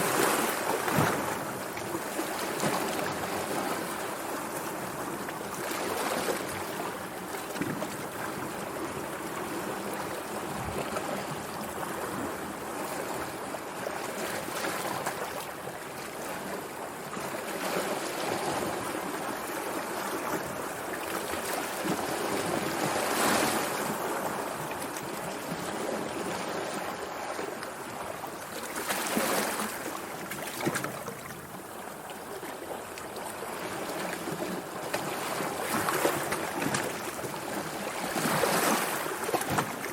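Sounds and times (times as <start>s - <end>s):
sea waves washing ashore: 0.0s - 39.9s.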